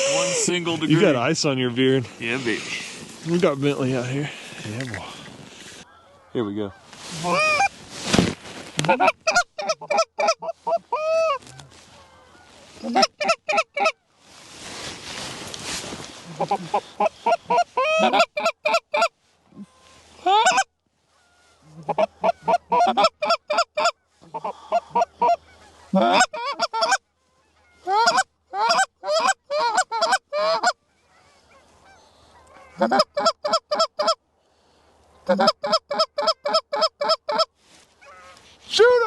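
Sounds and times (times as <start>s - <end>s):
goose honking: 5.9s - 7.7s, 8.8s - 14.0s, 16.3s - 34.2s, 35.2s - 38.5s.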